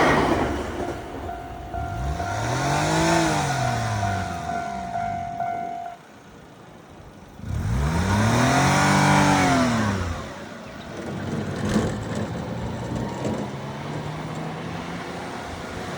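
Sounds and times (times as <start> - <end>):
car driving past revving: 0.0 - 6.0
steady traffic hum: 0.0 - 15.9.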